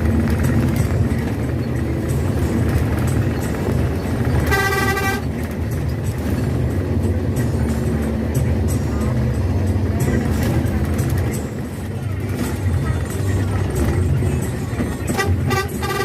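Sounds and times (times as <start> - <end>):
bus engine and road drone: 0.0 - 16.0
bus horn blast: 4.2 - 5.6, 15.0 - 16.0.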